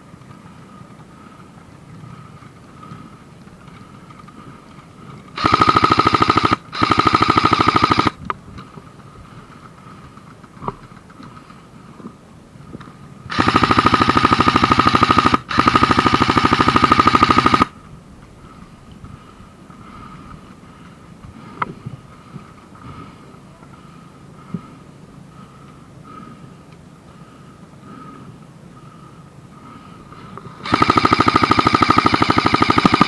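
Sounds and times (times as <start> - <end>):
airsoft gun full auto bursts: 5.4 - 8.2, 13.3 - 17.8, 30.6 - 33.0.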